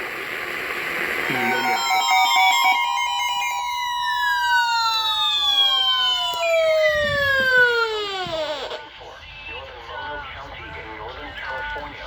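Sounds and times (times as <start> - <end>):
electronic alarm tones: 1.3 - 8.8.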